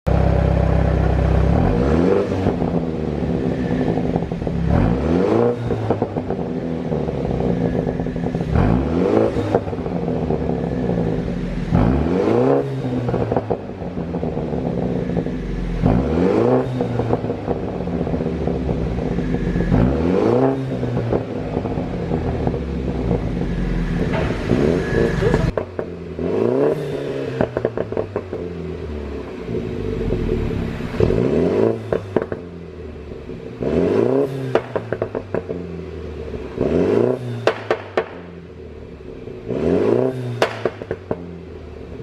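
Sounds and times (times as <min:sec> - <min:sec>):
car engine revving: 0:00.1 - 0:42.0
exhaust pops and crackles: 0:20.5 - 0:26.0, 0:27.4 - 0:28.5, 0:31.9 - 0:32.5, 0:34.5 - 0:35.6, 0:37.3 - 0:38.4, 0:40.2 - 0:41.4.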